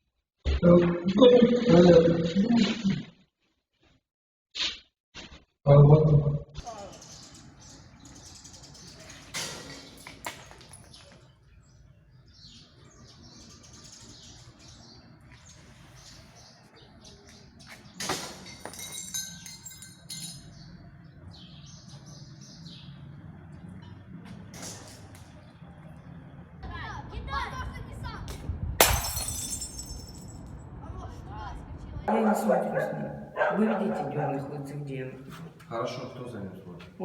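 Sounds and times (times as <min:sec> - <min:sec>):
birds chirping: 0:06.6 - 0:26.7, 0:32.1 - 0:37.0.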